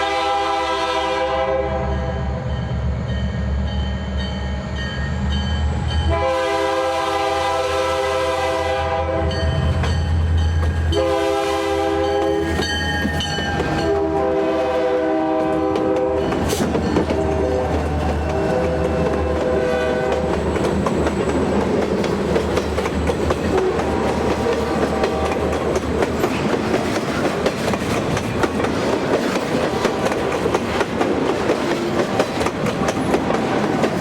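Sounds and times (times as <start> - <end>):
train air horn blasts: 0.0 - 2.4, 6.0 - 9.6, 10.9 - 12.7, 13.8 - 20.4, 23.5 - 25.6
train wheel clatter: 12.0 - 14.2, 15.3 - 34.0.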